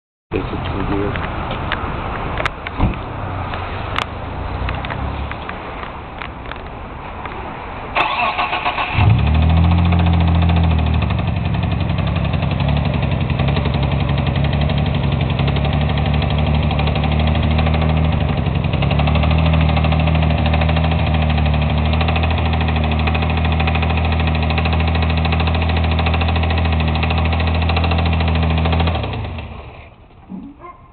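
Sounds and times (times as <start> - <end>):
engine starter cranking: 8.0 - 10.2
car engine idling: 8.0 - 30.7.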